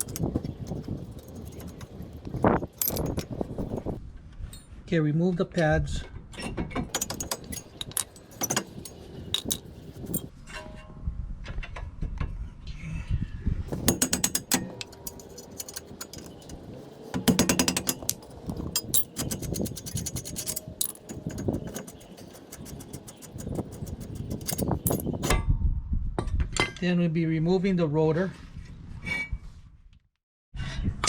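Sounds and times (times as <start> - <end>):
metallic clicks and scrapes: 0.0 - 4.0, 6.9 - 10.3, 13.7 - 25.4.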